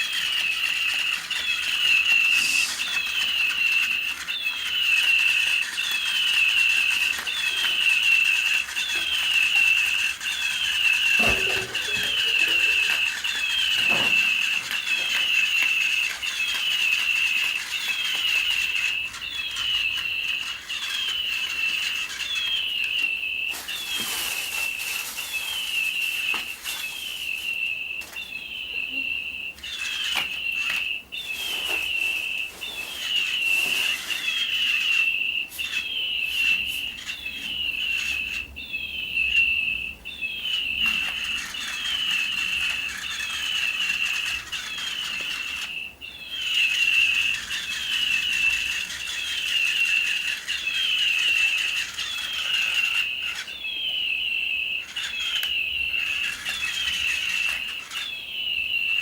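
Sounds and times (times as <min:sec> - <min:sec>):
electronic toy bird chirping: 0:00.0 - 0:59.0
rustling noise: 0:08.3 - 0:28.2, 0:29.6 - 0:37.2.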